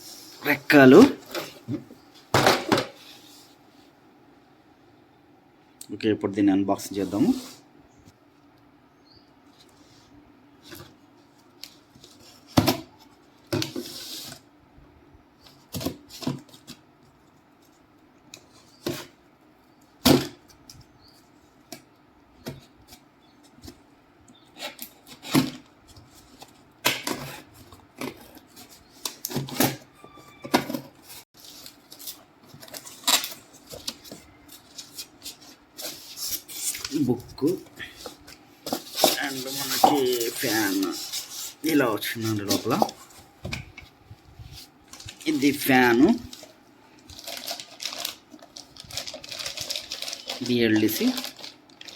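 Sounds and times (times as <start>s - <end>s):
packaging rustling and scraping: 24.4s - 51.9s.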